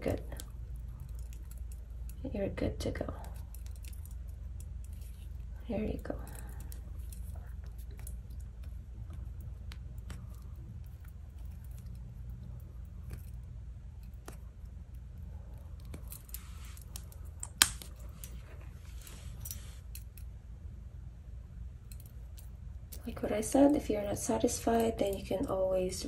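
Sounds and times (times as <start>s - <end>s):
low steady hum: 0.0s - 26.0s
metal padlock clicks: 3.3s - 5.4s.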